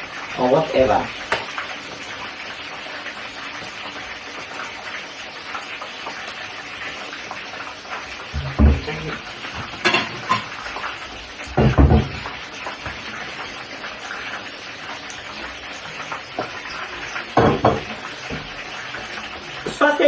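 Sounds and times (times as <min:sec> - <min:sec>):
food sizzling in a frying pan: 0:00.0 - 0:20.0
pan clattering: 0:08.4 - 0:10.8, 0:16.4 - 0:19.8.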